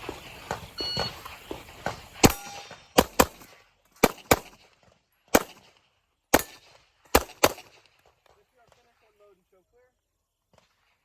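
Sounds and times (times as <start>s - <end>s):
pistol shots with echo: 1.0s - 4.7s, 5.3s - 8.0s.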